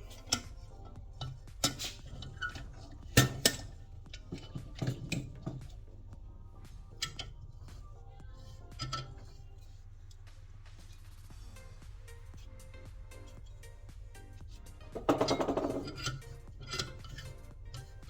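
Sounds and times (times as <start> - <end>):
metallic clinks and clicks: 12.6 - 18.0.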